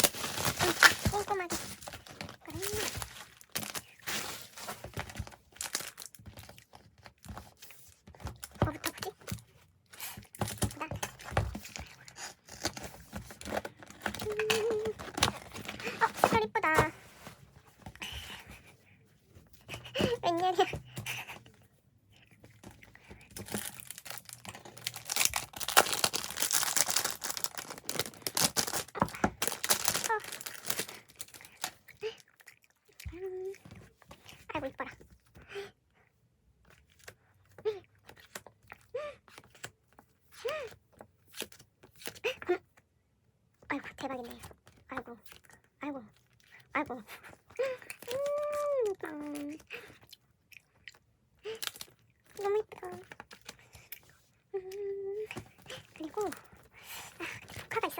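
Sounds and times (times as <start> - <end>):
packaging crinkling and rustling: 0.0 - 9.4, 10.0 - 17.9, 22.6 - 32.0.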